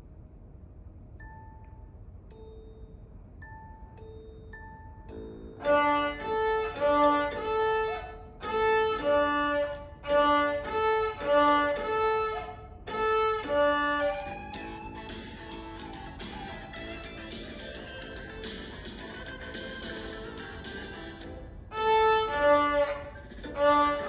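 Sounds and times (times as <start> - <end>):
busy instrumental accompaniment: 5.1 - 24.0
violin tune: 5.6 - 15.2, 21.7 - 24.0.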